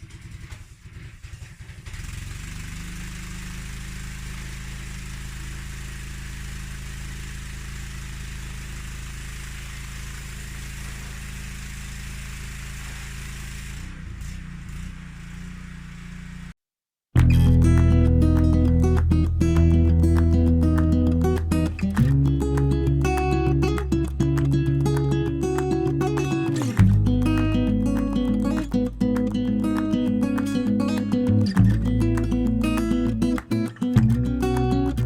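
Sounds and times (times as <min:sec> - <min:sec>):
music: 0:17.2 - 0:35.0.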